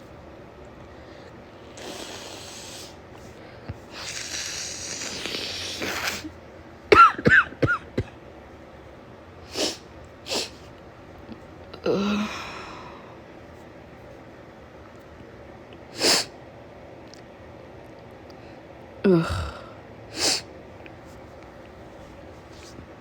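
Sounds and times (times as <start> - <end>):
woman sniffing: 1.7 - 3.0, 9.5 - 10.6, 20.2 - 20.5
woman hacking coughs: 6.9 - 8.2.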